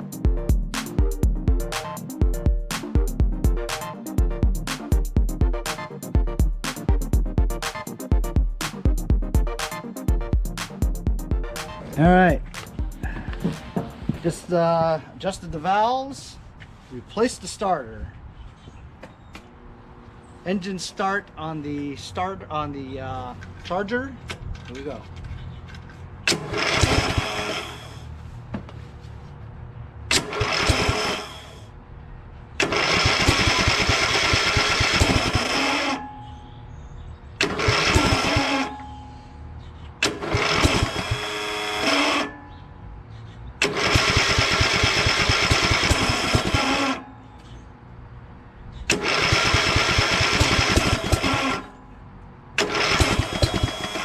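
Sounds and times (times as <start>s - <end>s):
engine cranking by electric starter: 11.4s - 14.2s, 26.3s - 28.0s, 30.1s - 31.6s, 32.6s - 36.0s, 37.4s - 38.9s, 40.0s - 42.3s, 43.6s - 47.0s, 48.9s - 51.7s, 52.6s - 54.0s.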